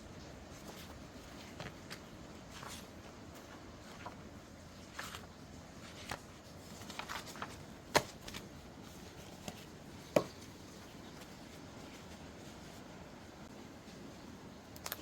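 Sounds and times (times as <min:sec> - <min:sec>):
light taps and paper handling: 0:00.1 - 0:13.0.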